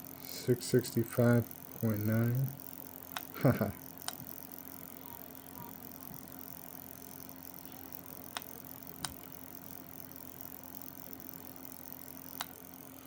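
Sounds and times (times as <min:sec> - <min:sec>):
small motor whirring and humming: 0:00.0 - 0:13.0
sharp clicks: 0:03.1 - 0:03.3, 0:04.0 - 0:04.3, 0:08.3 - 0:09.3, 0:12.3 - 0:12.6.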